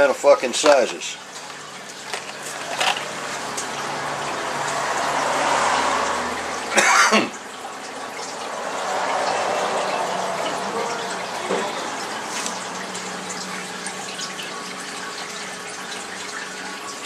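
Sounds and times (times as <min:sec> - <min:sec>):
loud cough: 0:06.7 - 0:07.4.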